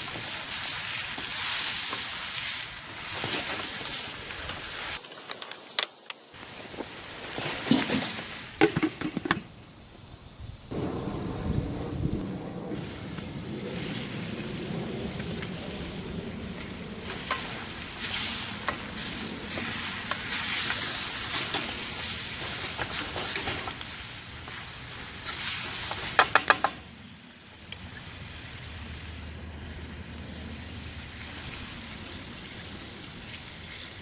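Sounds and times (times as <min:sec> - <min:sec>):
chicken sizzling in oil: 0:00.0 - 0:05.0, 0:17.0 - 0:26.8, 0:31.1 - 0:34.0.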